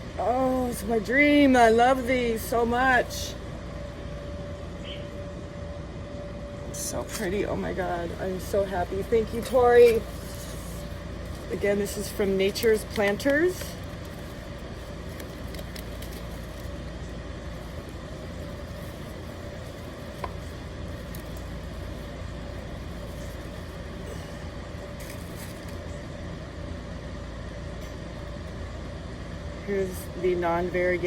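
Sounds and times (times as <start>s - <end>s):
faint constant hum: 0.0s - 31.0s
low background rumble: 0.0s - 31.0s.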